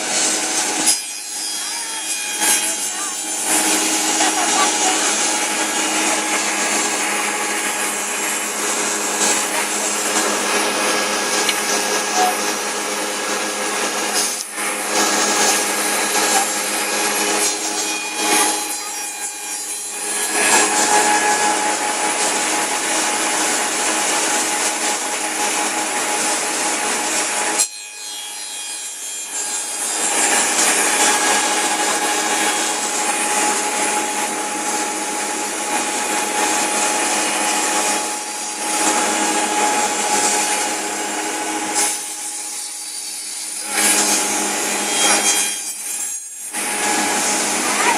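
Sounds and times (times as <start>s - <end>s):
saw cutting wood: 0.0s - 47.9s
motor hum: 3.0s - 17.7s.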